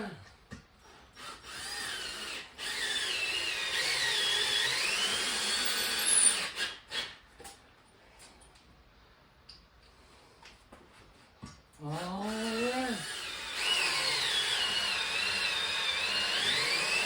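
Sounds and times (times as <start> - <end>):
cordless drill driving a screw: 1.2 - 7.2, 12.2 - 17.0.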